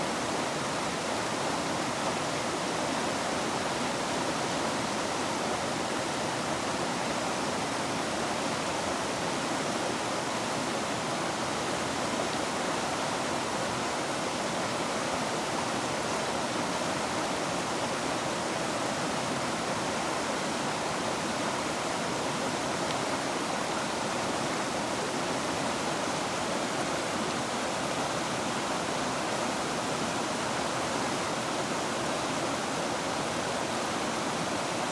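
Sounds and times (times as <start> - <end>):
river water rushing: 0.0 - 34.9.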